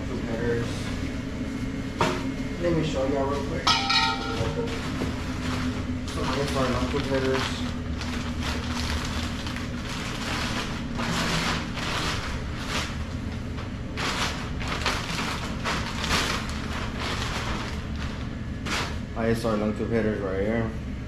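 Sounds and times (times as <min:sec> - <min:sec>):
steady low hum: 0:00.0 - 0:21.0
packaging rustling and crinkling: 0:04.3 - 0:19.1.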